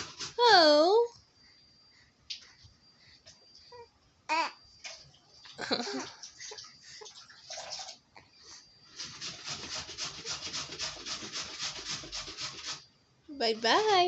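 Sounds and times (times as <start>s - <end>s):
baby cooing: 3.8s - 4.6s.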